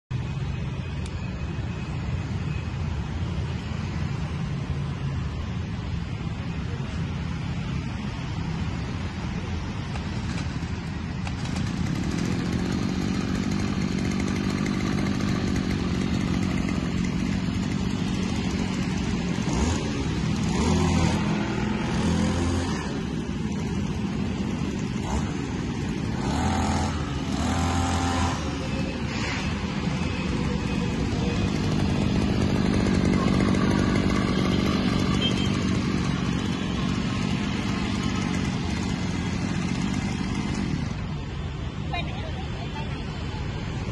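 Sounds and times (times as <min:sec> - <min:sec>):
brush cutter engine running: 0:09.8 - 0:41.2.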